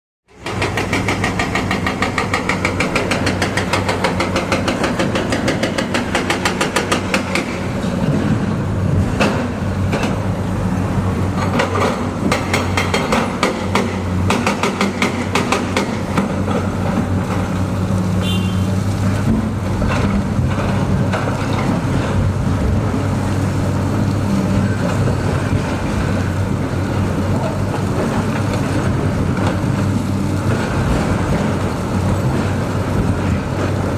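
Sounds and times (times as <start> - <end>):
diesel engine drone: 0.3 - 33.9
metallic clanks and knocks: 0.4 - 10.2.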